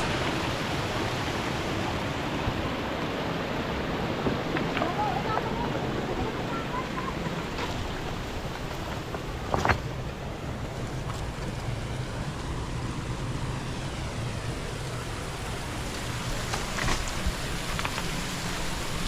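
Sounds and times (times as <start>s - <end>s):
steady outdoor rushing noise: 0.0s - 19.0s.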